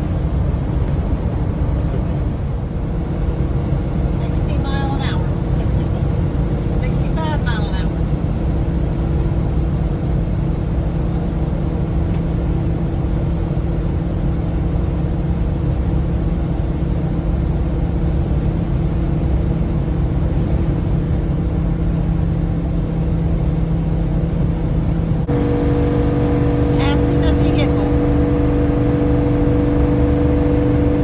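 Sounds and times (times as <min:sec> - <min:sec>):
engine drone: 0:18.4 - 0:31.0
road noise: 0:24.3 - 0:31.0.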